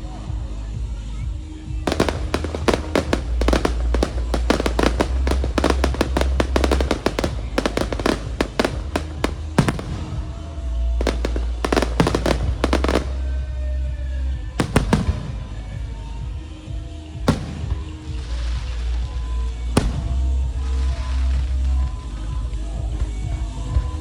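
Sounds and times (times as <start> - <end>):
deep low rumble: 1.8 - 24.0
fireworks bangs: 1.9 - 13.6, 14.6 - 16.1, 17.2 - 19.0, 19.8 - 21.1.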